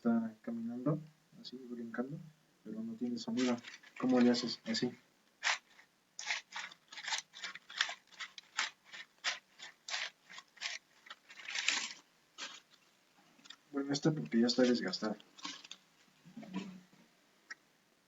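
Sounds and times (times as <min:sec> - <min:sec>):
prop scraping foley footsteps: 0:03.4 - 0:15.8.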